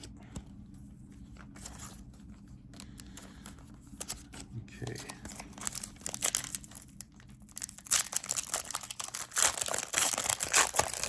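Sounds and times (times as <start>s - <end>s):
foil wrapper crinkling: 4.8s - 11.0s.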